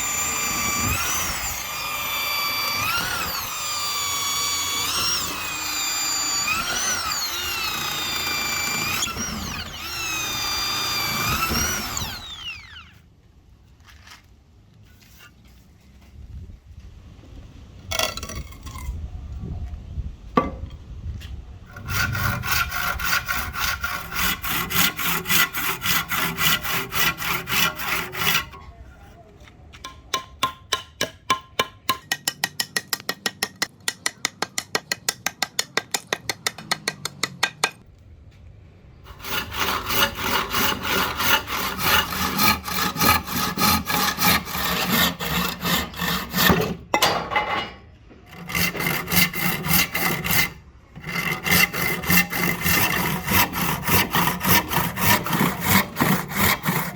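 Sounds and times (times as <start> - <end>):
hand tool stroking wood: 0.0 - 12.5, 21.7 - 29.2, 39.1 - 46.8, 48.3 - 56.9.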